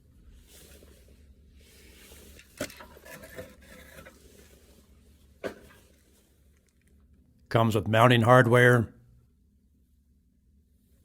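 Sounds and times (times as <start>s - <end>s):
faint rustling and clinking: 0.4s - 7.2s.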